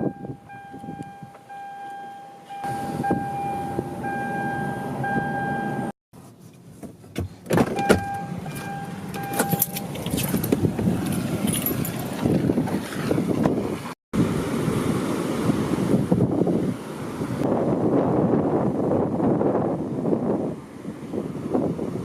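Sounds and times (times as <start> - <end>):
wind buffeting microphone: 0.0 - 1.3, 9.5 - 22.0
electronic chime tone: 0.0 - 5.9, 7.9 - 9.8.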